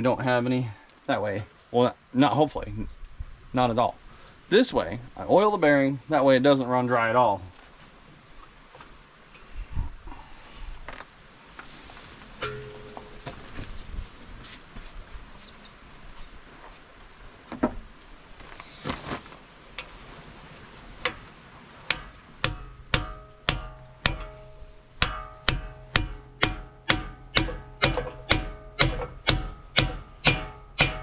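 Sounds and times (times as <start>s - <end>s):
hammer striking steel: 12.4s - 13.4s, 21.9s - 31.0s.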